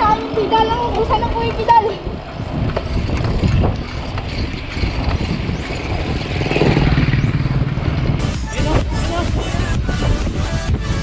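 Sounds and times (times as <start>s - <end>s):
road noise rumble: 0.0s - 11.0s
vehicle engine running: 4.1s - 9.8s.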